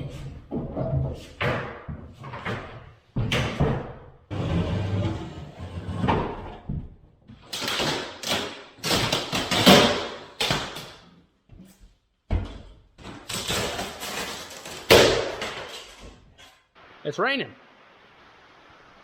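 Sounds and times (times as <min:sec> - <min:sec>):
wooden cabinet banging and scraping: 0:00.0 - 0:07.0.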